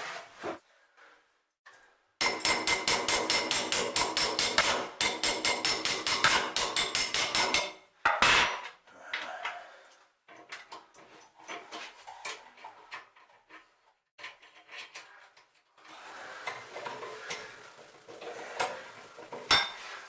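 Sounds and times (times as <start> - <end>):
rapid hammering: 2.2 - 7.8.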